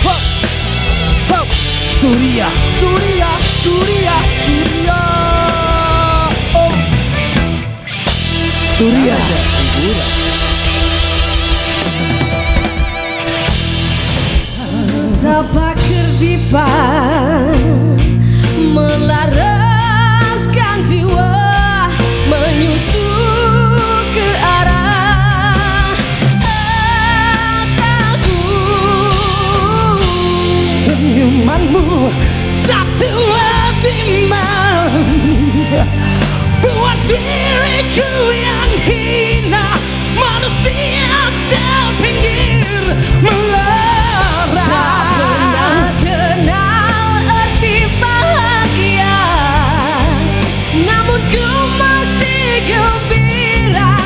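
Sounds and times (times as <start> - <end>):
person singing with vibrato: 0.0 - 7.0, 8.4 - 13.7, 14.3 - 54.0
full band playing pop-rock: 0.0 - 54.0.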